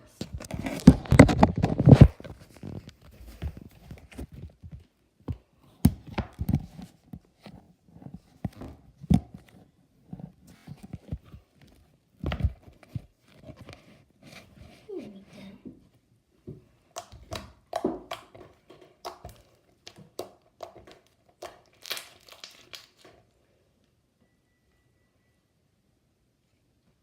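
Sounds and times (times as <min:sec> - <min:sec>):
slime clicking and popping: 0:16.9 - 0:23.1.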